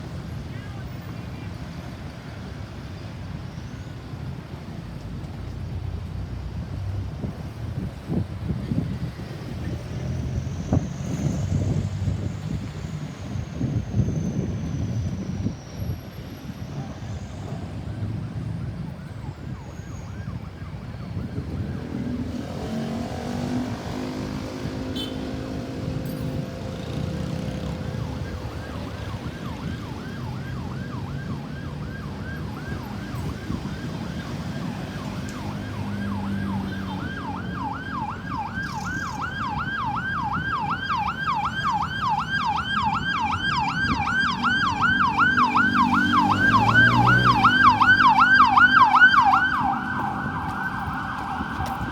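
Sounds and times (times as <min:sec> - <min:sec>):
road traffic rumble: 0:00.0 - 0:51.9
ambulance siren yelping: 0:16.9 - 0:51.9.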